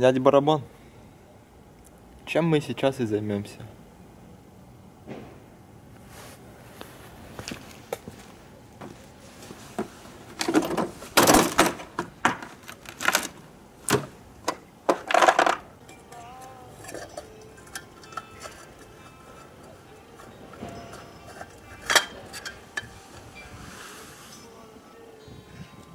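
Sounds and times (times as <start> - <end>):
metal hand tools clanking: 14.5 - 24.6.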